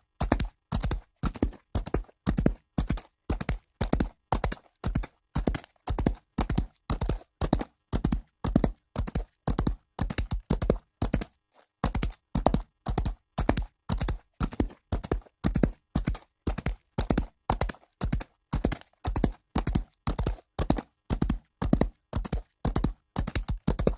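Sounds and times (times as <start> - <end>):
horse hoofbeats on dirt: 0.2 - 23.9.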